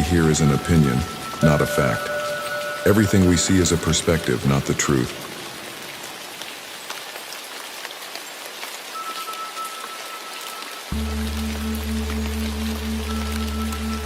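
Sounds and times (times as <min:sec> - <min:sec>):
singing bowl tone: 0:00.0 - 0:03.4, 0:10.9 - 0:14.0
steady rain: 0:00.0 - 0:14.0.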